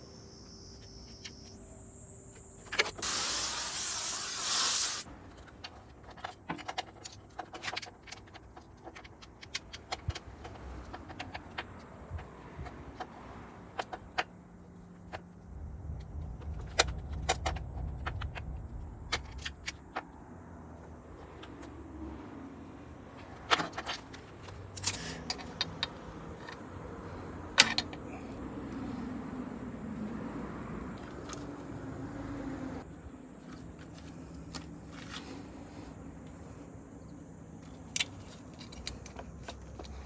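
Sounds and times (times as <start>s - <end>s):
hissing air blast: 2.8s - 5.1s.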